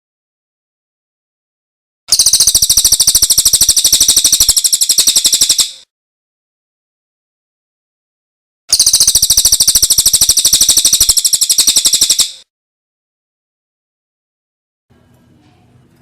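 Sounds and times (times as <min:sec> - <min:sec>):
songbird trill: 0:02.1 - 0:05.8, 0:08.7 - 0:12.4.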